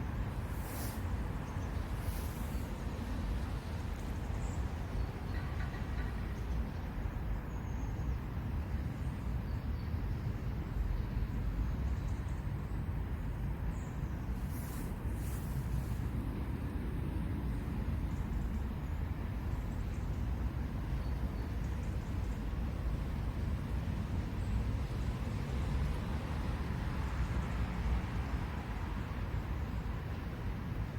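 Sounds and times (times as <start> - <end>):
brief high hiss: 0.5 - 1.1.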